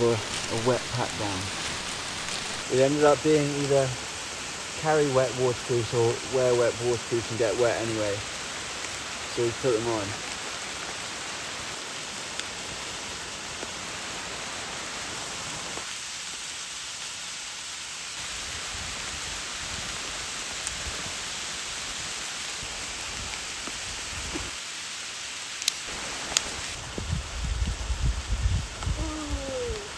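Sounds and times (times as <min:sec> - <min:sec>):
light ticks of raindrops: 0:00.0 - 0:15.9, 0:25.5 - 0:29.9
steady rain hiss: 0:00.0 - 0:29.9.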